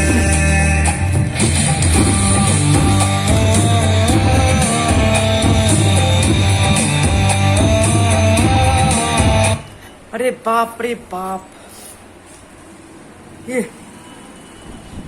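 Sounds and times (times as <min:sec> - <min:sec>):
loud rock music: 0:00.0 - 0:09.6.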